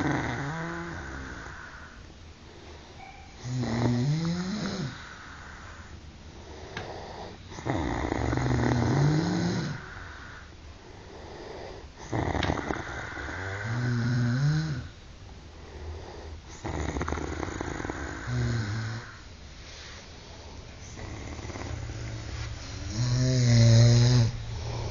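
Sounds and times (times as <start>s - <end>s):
men snoring loudly: 0.0s - 1.7s, 3.4s - 5.1s, 6.7s - 9.9s, 22.8s - 24.9s.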